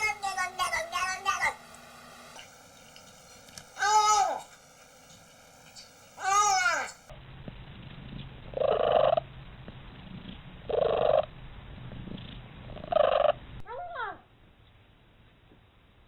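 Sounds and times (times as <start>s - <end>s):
cat purring: 8.1s - 13.4s.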